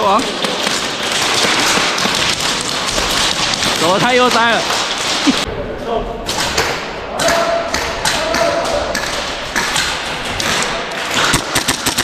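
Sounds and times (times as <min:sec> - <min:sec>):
airsoft gunfire clicks: 0:09.0 - 0:12.0.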